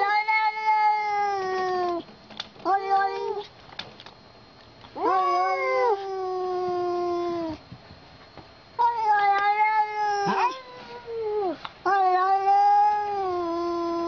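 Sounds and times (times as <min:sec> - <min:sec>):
cat meowing: 0:08.8 - 0:14.0.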